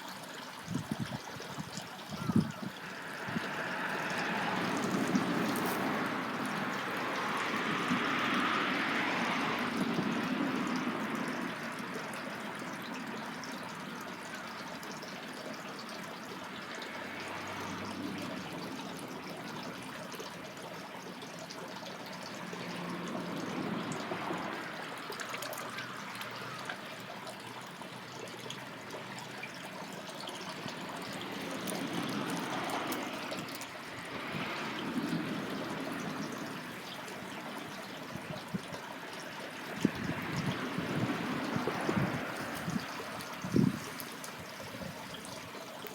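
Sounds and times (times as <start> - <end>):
water running: 0.0 - 11.9, 28.6 - 45.9.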